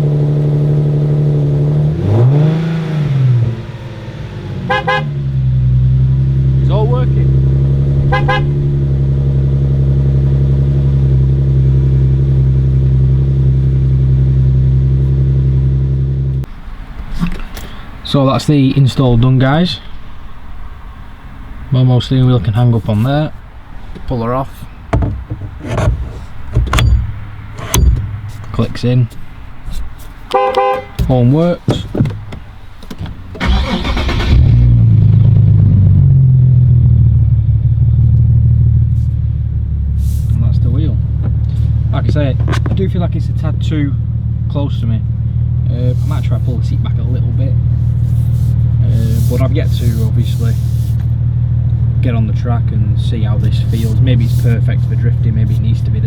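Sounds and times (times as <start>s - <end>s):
car engine idling: 0.0s - 56.0s
starter cranking: 24.8s - 28.7s, 31.0s - 34.6s.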